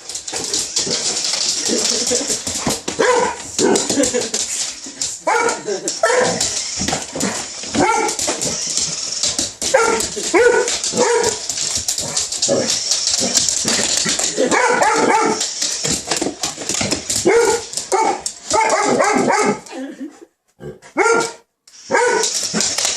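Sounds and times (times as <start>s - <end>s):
dog barking: 3.0s - 3.8s, 5.3s - 6.4s, 7.8s - 8.2s, 9.7s - 11.4s, 14.5s - 15.4s, 17.2s - 19.6s, 21.0s - 22.3s.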